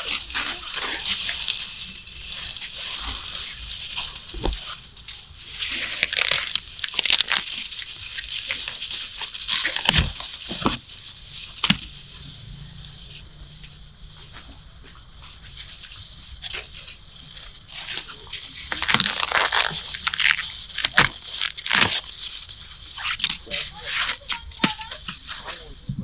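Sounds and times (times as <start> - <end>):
sharp snaps and tearing: 0.0 - 12.0, 17.4 - 25.6
dry corn leaves rustling: 0.0 - 26.0.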